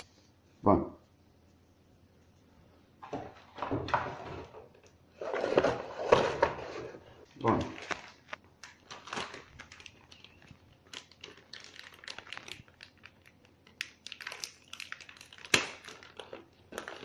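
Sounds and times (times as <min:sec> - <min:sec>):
packing material crinkling: 0:07.4 - 0:17.0.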